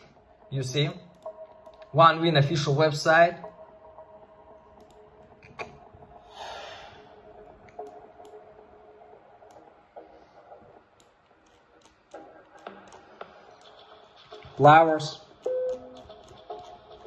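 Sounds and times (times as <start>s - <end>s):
computer mouse and key clicks: 1.1s - 1.9s, 4.8s - 5.8s, 7.6s - 8.4s, 9.4s - 14.7s, 15.4s - 17.0s.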